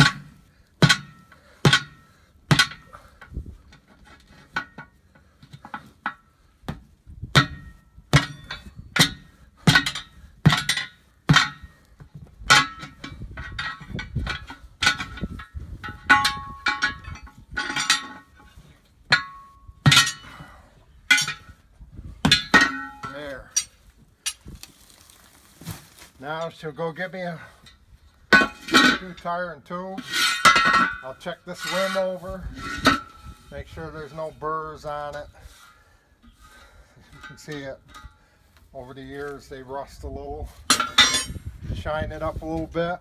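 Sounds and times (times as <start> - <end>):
pry bar clanking on metal rim: 0.0 - 3.3, 7.4 - 11.7, 12.5 - 18.4, 19.1 - 20.5, 21.1 - 21.6, 22.3 - 24.6, 30.0 - 33.4, 40.7 - 41.5.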